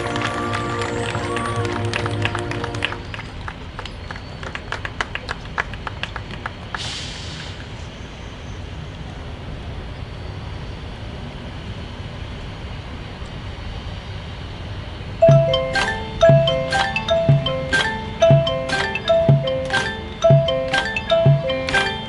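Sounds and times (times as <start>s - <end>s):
marimba and mallet percussion: 15.2s - 22.0s.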